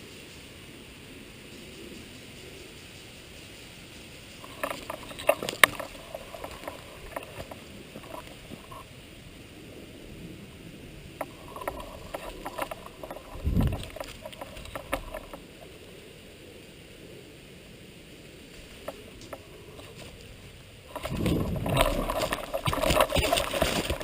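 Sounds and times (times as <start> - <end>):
clicks and rustling: 4.4 - 8.9, 11.2 - 15.6, 20.9 - 24.0.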